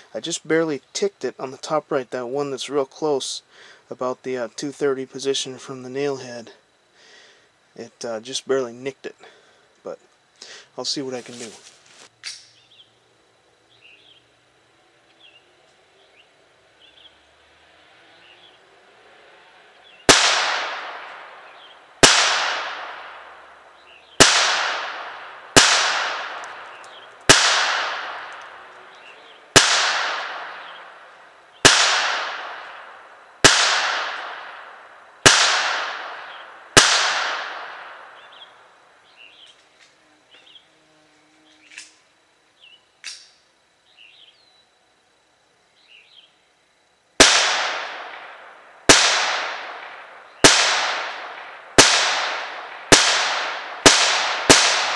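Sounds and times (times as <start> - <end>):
pistol shots echoing: 20.1 - 38.5, 47.2 - 54.9.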